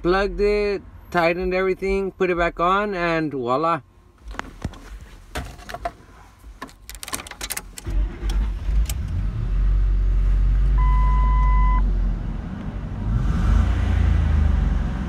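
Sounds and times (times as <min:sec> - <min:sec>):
car engine starting and idling: 0:06.0 - 0:15.0.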